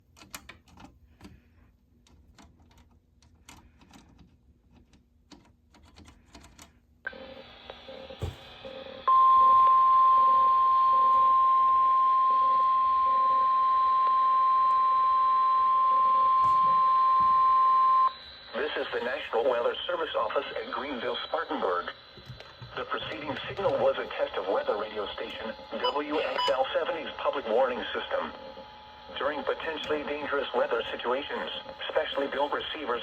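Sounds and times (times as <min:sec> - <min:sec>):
loud high warning alarm tone: 0:07.9 - 0:33.0
radio hiss: 0:17.9 - 0:33.0.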